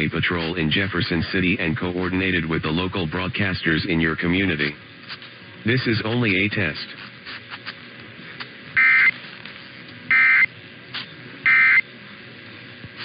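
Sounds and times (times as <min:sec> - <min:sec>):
faint radio hiss: 0:00.0 - 0:13.0
warbling data tone bursts: 0:08.8 - 0:09.1, 0:10.1 - 0:10.5, 0:11.4 - 0:11.8.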